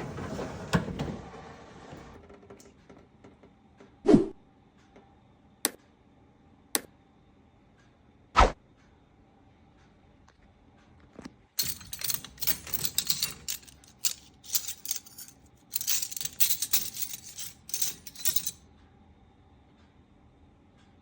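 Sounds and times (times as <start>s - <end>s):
dishes and cutlery clinking: 11.6s - 18.6s.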